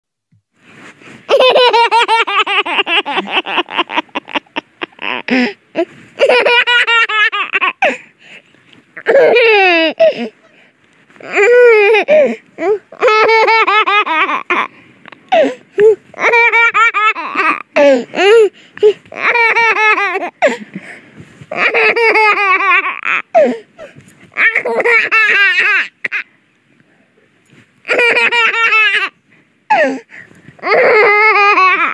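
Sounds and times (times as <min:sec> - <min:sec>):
baby giggling: 0:01.3 - 0:08.0, 0:09.0 - 0:10.3, 0:11.2 - 0:20.6, 0:21.5 - 0:23.2, 0:24.4 - 0:26.2, 0:27.9 - 0:29.9, 0:30.6 - 0:31.9.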